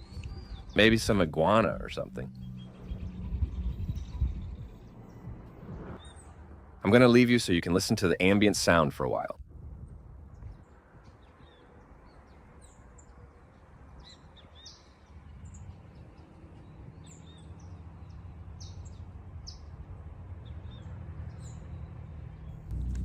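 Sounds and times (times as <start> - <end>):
steady low rumble: 0.0 - 10.6, 22.5 - 23.0
high bird chirps: 2.3 - 5.4.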